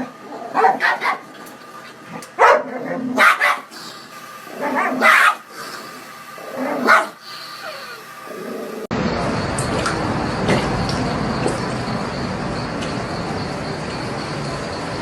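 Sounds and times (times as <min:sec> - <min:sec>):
dog barking: 0:00.5 - 0:01.3, 0:02.4 - 0:03.7, 0:04.7 - 0:05.5, 0:06.8 - 0:08.0.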